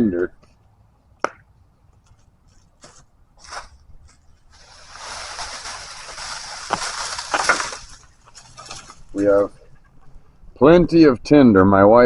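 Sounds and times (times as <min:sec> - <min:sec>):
dry sticks crackling: 0:00.2 - 0:10.4
dry rustling of tinder: 0:02.0 - 0:10.4.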